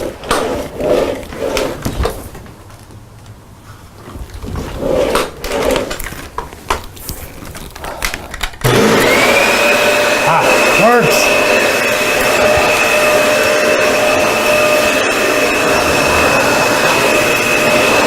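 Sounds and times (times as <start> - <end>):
vacuum cleaner motor whine: 8.6 - 18.0.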